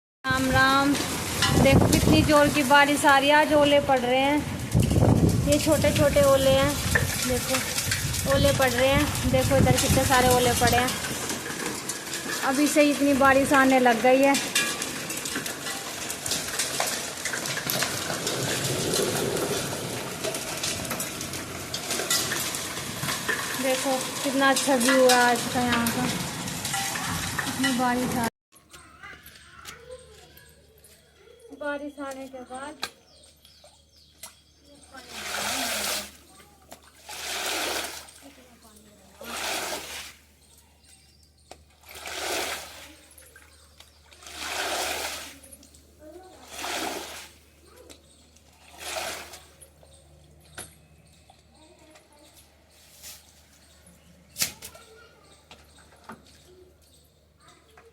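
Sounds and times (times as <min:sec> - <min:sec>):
hail ticking: 0:00.6 - 0:28.0
water splashing: 0:04.4 - 0:28.0, 0:35.0 - 0:40.3, 0:41.8 - 0:45.6, 0:46.4 - 0:47.5, 0:48.6 - 0:49.6.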